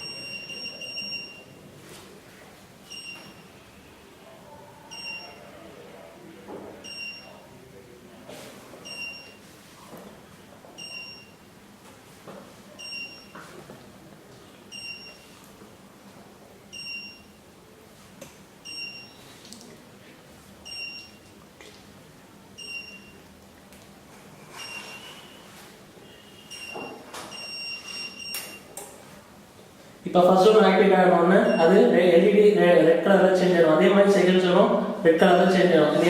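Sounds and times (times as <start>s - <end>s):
alarm panel buzzer beeps: 0.0s - 1.5s, 14.7s - 15.2s, 18.7s - 19.2s, 26.0s - 28.7s.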